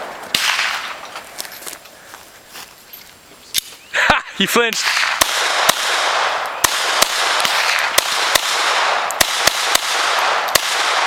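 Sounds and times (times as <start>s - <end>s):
gunshots: 0.0s - 1.0s, 4.6s - 11.0s.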